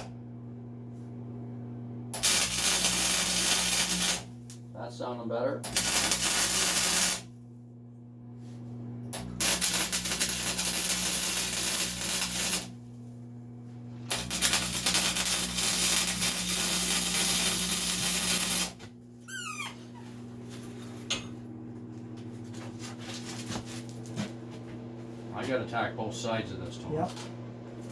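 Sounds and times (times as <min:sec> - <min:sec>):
welder steady hum: 0:00.0 - 0:19.1
welding arc crackling: 0:02.1 - 0:04.6, 0:05.6 - 0:07.3, 0:09.1 - 0:12.8, 0:14.1 - 0:18.8.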